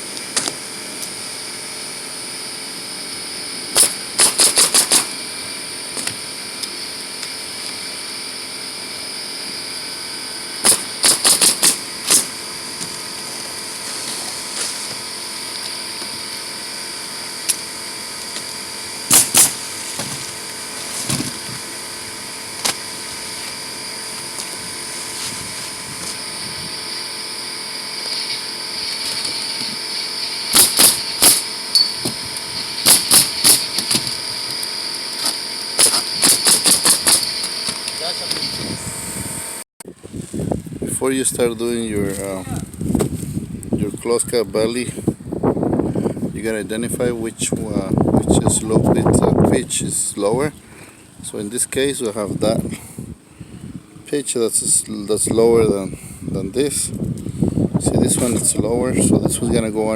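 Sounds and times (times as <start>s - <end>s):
nails hammered into roof shingles: 3.8s - 5.2s, 10.6s - 13.0s, 19.1s - 20.4s, 30.5s - 32.2s, 32.8s - 34.2s, 35.2s - 37.8s.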